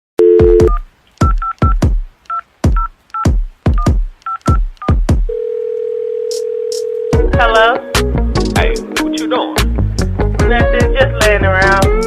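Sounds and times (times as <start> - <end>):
steady telephone tone: 0.2 - 0.8, 5.3 - 7.2
telephone keypad beeps: 0.2 - 1.6.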